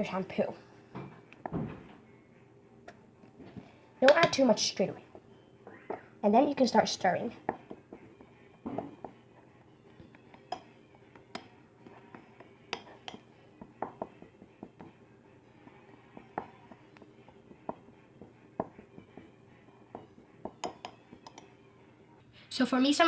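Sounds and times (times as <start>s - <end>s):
utensil stirring in a container: 7.3s - 21.6s.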